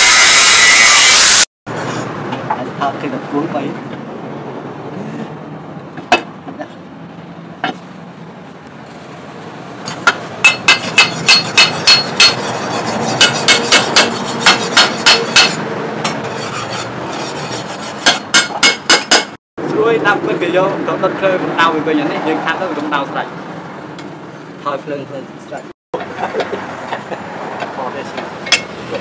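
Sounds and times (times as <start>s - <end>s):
steady background noise: 1.2s - 29.0s
hammer striking steel: 9.9s - 16.7s, 18.0s - 19.4s, 28.4s - 28.8s.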